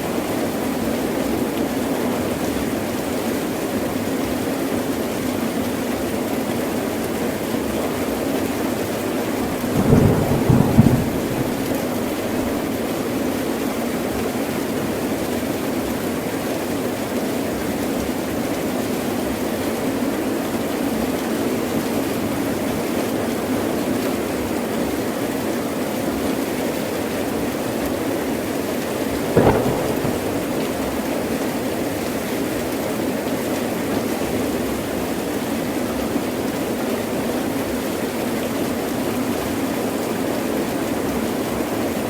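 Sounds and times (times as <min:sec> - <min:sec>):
heavy rain falling: 0:05.6 - 0:19.8, 0:26.4 - 0:36.9
sharp thunderclap: 0:09.6 - 0:12.9, 0:29.2 - 0:31.7
thunder rolling: 0:09.6 - 0:13.1, 0:29.2 - 0:31.7.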